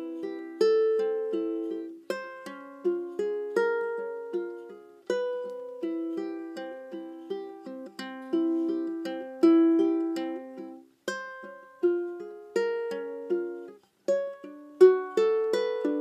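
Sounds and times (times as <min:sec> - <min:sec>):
fingerpicked ukulele: 0:00.0 - 0:16.0.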